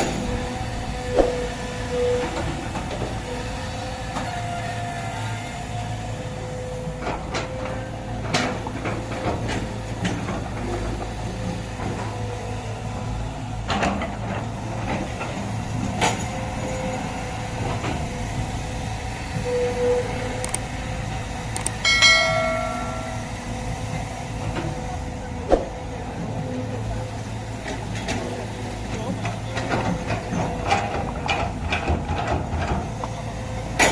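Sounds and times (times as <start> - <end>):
diesel engine running: 0.0 - 33.9
high-pitched tone: 21.8 - 23.6.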